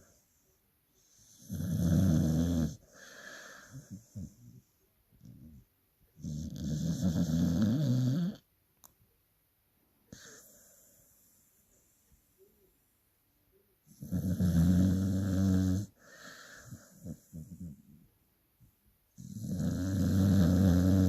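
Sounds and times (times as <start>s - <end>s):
dog snoring: 1.0s - 5.6s, 6.2s - 8.4s, 13.9s - 18.0s, 19.2s - 21.0s
dog breathing: 15.9s - 18.0s.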